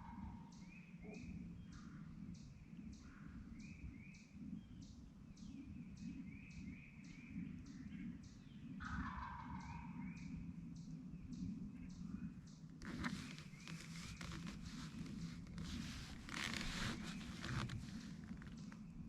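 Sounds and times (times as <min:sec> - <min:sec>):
turkey gobbling: 0:08.8 - 0:10.0.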